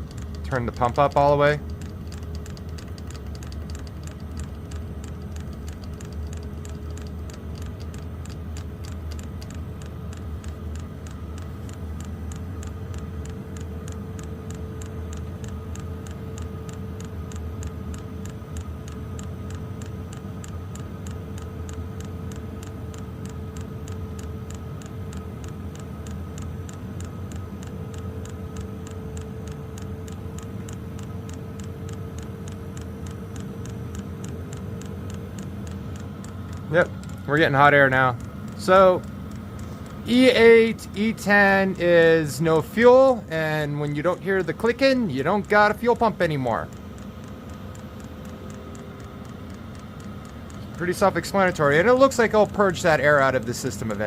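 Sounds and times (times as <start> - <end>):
fuel pump clicking: 0.0 - 54.0
heater blower whirring: 0.0 - 54.0.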